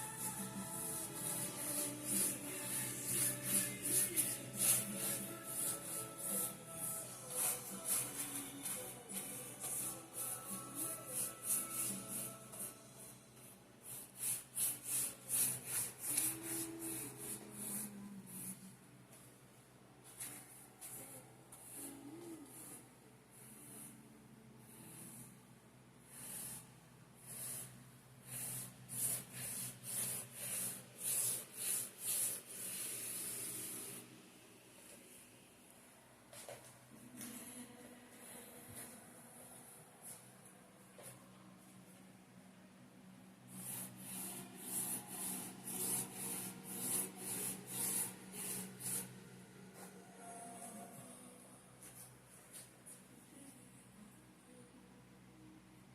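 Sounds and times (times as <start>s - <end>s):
brush strokes swishing on canvas: 0.0s - 12.8s, 13.9s - 19.3s, 20.0s - 24.0s, 28.3s - 34.1s, 43.5s - 50.0s.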